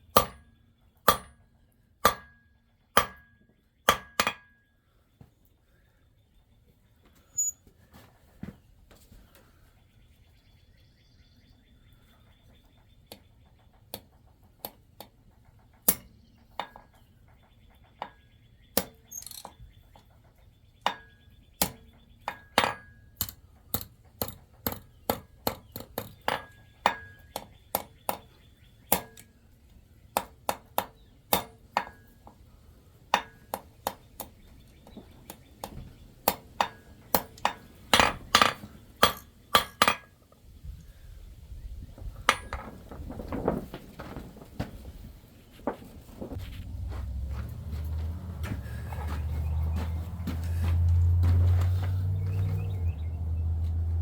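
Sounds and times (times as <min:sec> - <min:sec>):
hammer striking metal on anvil: 0:00.1 - 0:00.4, 0:01.1 - 0:01.4, 0:02.0 - 0:04.6.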